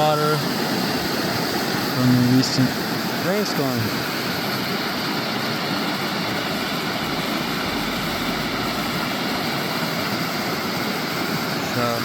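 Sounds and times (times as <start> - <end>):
stream water rushing: 0.0 - 12.0
faint low rumble: 6.6 - 9.6.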